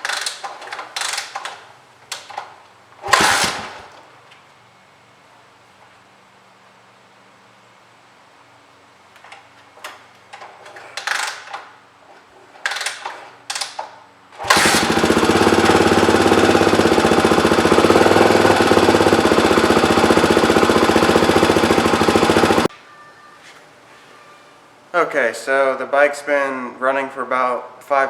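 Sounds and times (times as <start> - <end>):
motorcycle engine running: 14.4 - 22.7.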